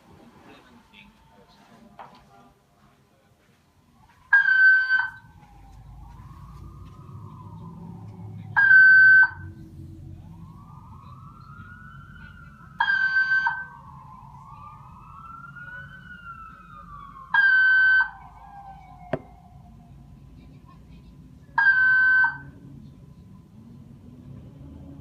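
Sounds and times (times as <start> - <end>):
faint siren wailing: 0.3 - 25.0
fire alarm electronic tone: 4.3 - 9.6, 10.3 - 18.4, 21.6 - 22.6.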